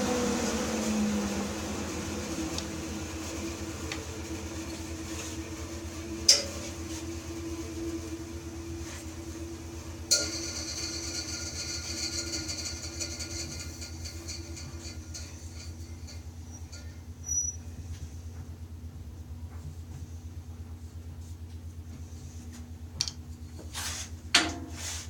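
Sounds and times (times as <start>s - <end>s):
bandsaw motor hum: 0.0s - 18.0s.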